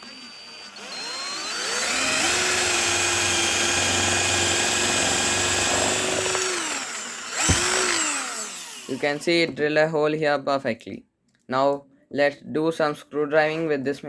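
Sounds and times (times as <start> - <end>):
cordless drill motor whine: 0.0 - 9.4.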